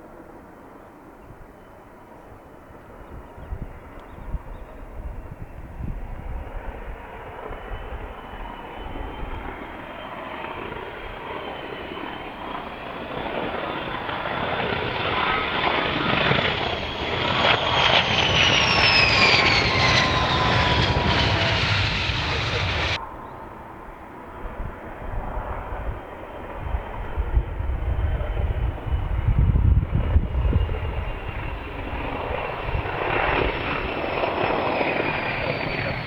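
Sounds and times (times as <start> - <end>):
aircraft engines passing: 2.0 - 36.0
high engine whine: 12.6 - 24.4.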